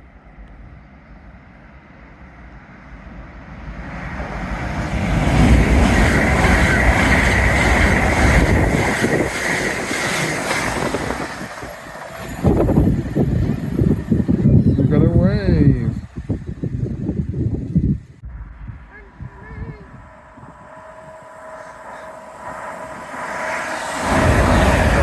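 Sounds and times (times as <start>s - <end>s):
train passing: 0.0s - 25.0s
wheels clattering over rail joints: 5.1s - 14.4s
steady high-pitched tone: 18.2s - 25.0s.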